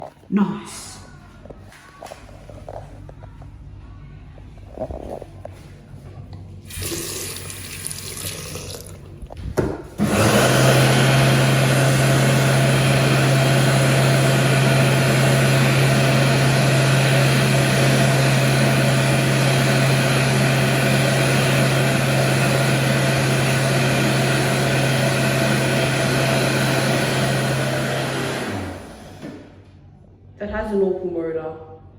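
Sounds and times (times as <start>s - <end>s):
electric hand dryer running: 10.0s - 29.6s.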